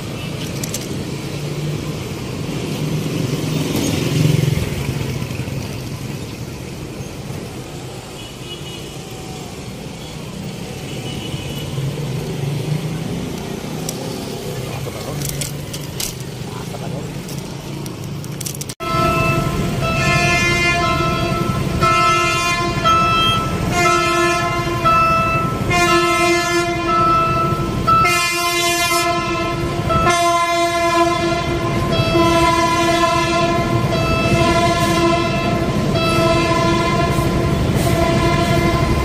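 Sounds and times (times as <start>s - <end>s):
horn-like melody: 18.8s - 39.0s.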